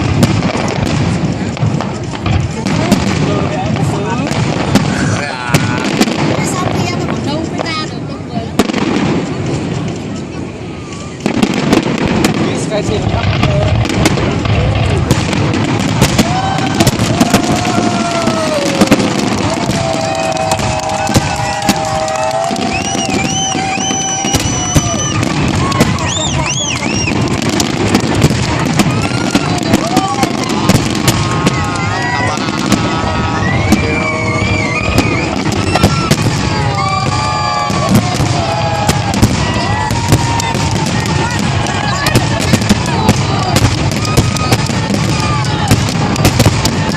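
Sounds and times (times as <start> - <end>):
fireworks bangs and crackles: 0.0 - 46.9
firework whistling tone: 14.9 - 46.9.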